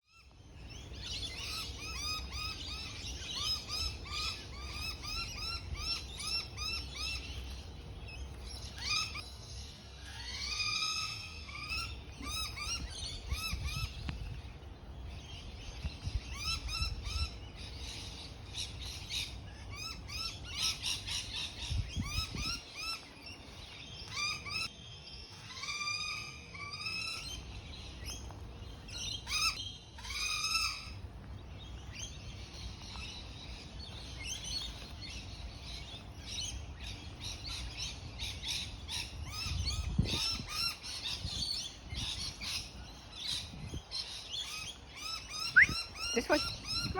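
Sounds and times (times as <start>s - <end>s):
birds calling: 0.1s - 46.9s.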